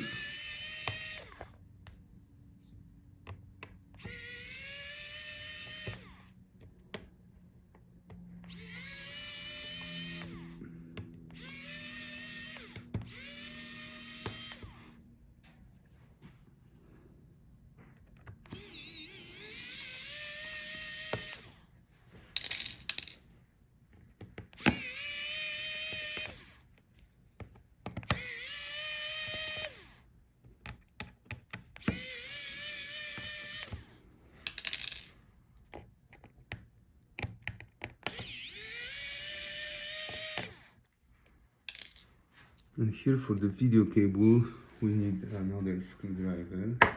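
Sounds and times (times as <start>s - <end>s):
electric screwdriver motor whine: 0.0s - 1.6s, 4.0s - 6.3s, 8.4s - 15.0s, 18.5s - 21.6s, 24.6s - 26.6s, 28.0s - 30.0s, 31.8s - 33.9s, 38.0s - 40.7s
clicks and clatter of screws: 22.3s - 23.2s, 34.5s - 35.2s, 41.7s - 42.1s.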